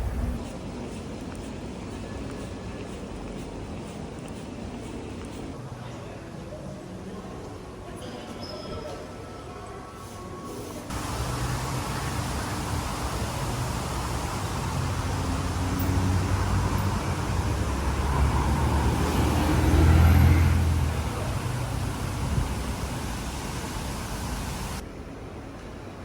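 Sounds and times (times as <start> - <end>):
steady traffic hum: 0.0 - 5.6, 10.9 - 25.1
vehicle engine passing: 10.9 - 24.8.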